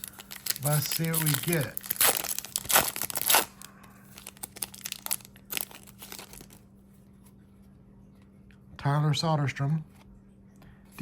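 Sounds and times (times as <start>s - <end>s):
foil wrapper crinkling: 0.0s - 6.6s.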